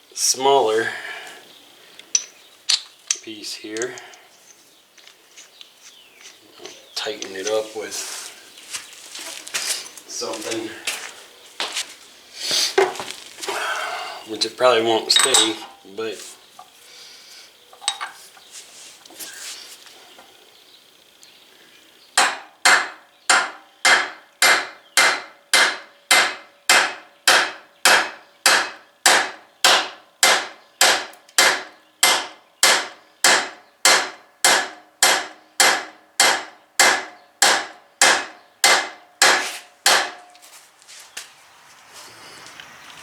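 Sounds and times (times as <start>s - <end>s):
hammer striking metal: 22.2s - 40.3s.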